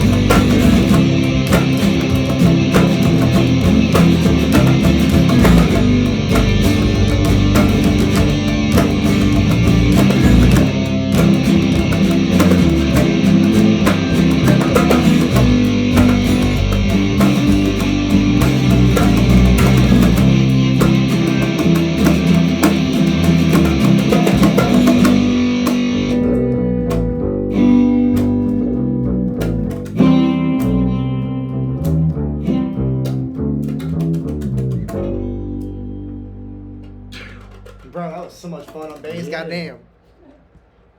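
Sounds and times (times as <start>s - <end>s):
rock band playing: 0.0s - 28.8s
distorted electric guitar: 0.0s - 38.0s
bass guitar: 0.0s - 39.4s.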